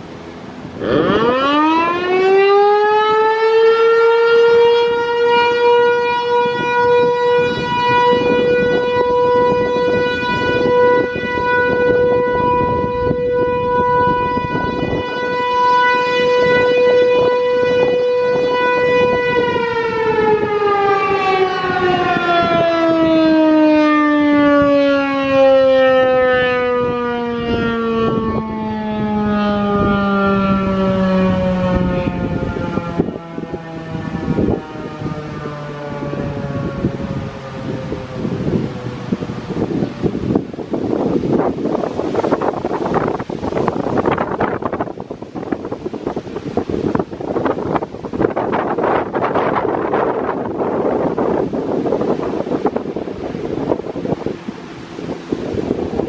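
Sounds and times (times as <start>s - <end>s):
wind buffeting microphone: 0.0s - 56.0s
warning siren winding: 0.8s - 39.4s.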